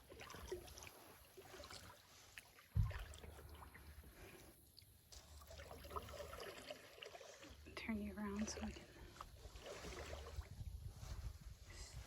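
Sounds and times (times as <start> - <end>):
low thump: 2.8 - 3.0.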